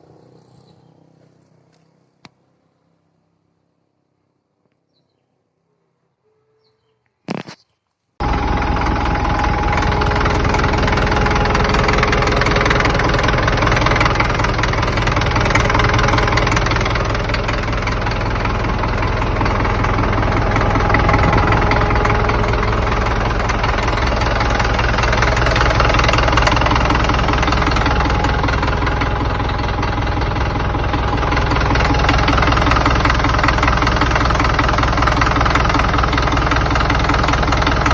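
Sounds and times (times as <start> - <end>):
bulldozer diesel engine running: 8.2 - 37.9.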